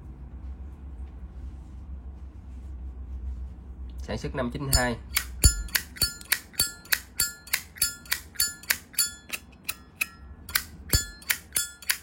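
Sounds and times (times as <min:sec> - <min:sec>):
lighter lid clicking open and shut: 0:05.2 - 0:12.0.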